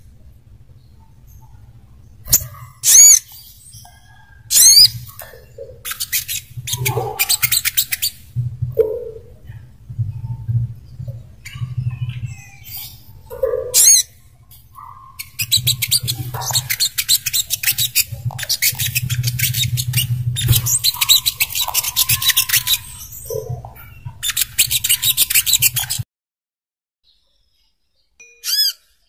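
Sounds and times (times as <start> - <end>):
bird chittering trills: 2.3 - 8.3, 11.4 - 26.0.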